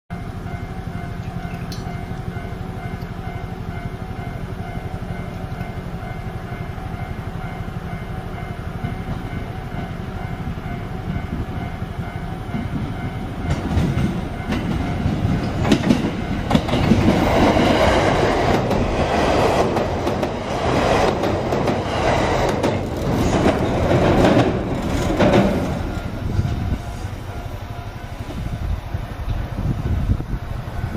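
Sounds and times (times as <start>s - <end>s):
level crossing warning bell: 0.1s - 17.3s, 25.2s - 28.9s
train wheels clacking over rails: 8.4s - 28.5s.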